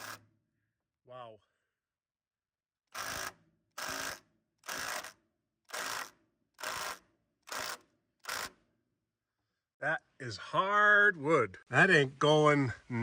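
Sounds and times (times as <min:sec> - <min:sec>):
power driver driving screw: 0:00.0 - 0:00.3, 0:02.9 - 0:08.8.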